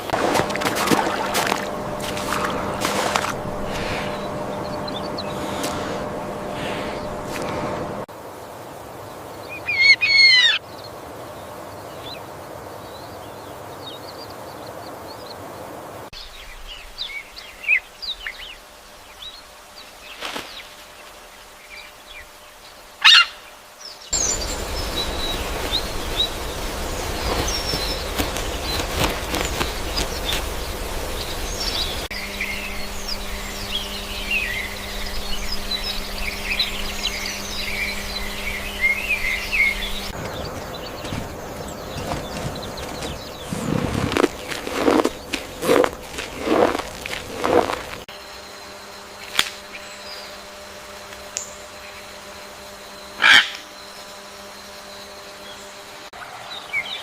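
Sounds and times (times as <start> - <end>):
steady low hum: 0.0 - 9.5, 14.9 - 57.0
dense bird chorus: 0.0 - 48.3, 48.9 - 57.0
falling bird chirps: 24.1 - 48.0.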